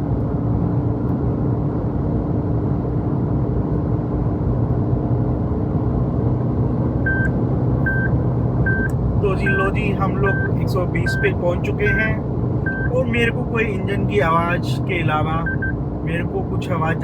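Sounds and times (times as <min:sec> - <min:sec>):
road and wind noise: 0:00.0 - 0:17.0
car engine running hard: 0:00.1 - 0:17.0
speed-warning beeps: 0:07.1 - 0:12.0, 0:12.7 - 0:13.0, 0:15.4 - 0:15.8.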